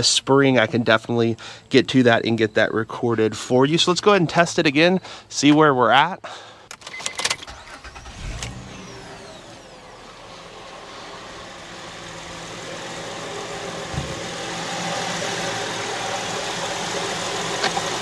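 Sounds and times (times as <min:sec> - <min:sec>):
car engine idling: 0:07.4 - 0:18.0
low thump: 0:13.9 - 0:14.4.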